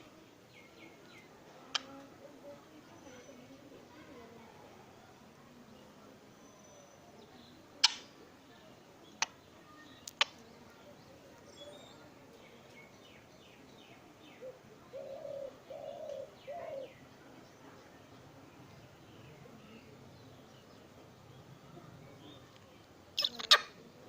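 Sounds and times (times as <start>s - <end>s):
parrot chirping: 23.2s - 23.7s.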